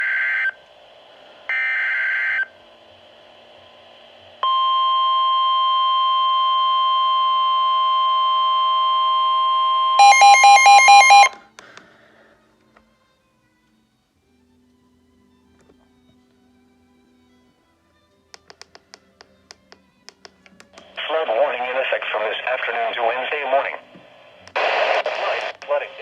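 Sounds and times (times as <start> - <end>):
steady warning alarm tone: 4.4 - 11.4
rapid pulsing beeps: 10.0 - 11.3.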